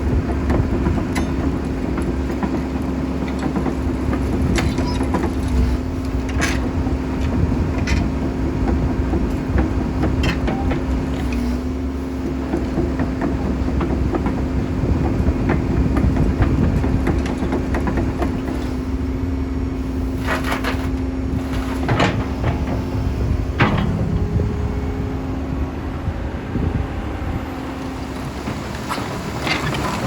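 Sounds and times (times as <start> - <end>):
diesel engine humming: 0.0 - 30.0
metallic clanks: 20.2 - 24.7.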